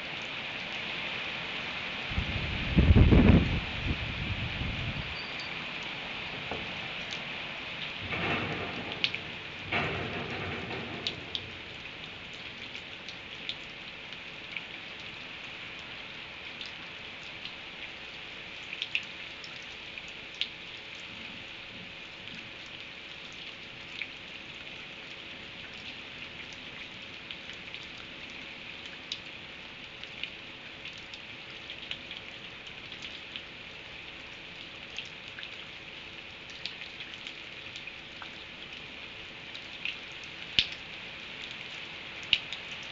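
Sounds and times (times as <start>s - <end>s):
steady rain: 0.0s - 42.9s
thunder rolling: 8.0s - 11.8s.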